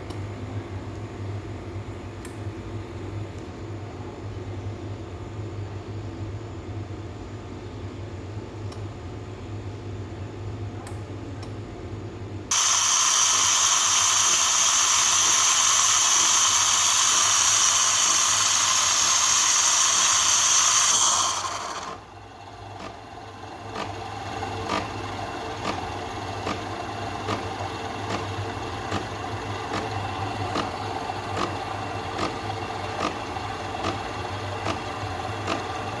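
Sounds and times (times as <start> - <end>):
espresso machine humming: 12.5 - 36.0
steam wand hissing: 12.5 - 36.0.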